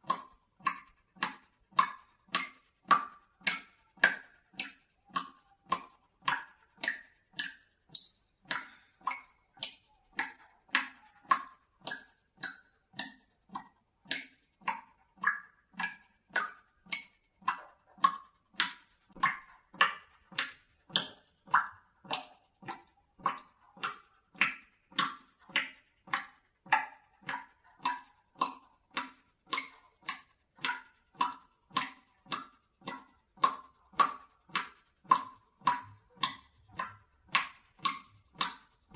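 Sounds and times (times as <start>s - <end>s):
water drops plinking into bucket: 0.0s - 38.9s.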